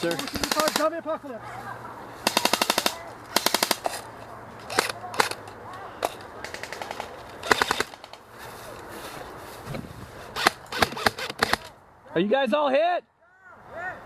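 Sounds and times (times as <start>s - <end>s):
airsoft guns firing bursts: 0.0s - 1.0s, 2.2s - 3.9s, 6.4s - 8.2s, 10.4s - 11.7s.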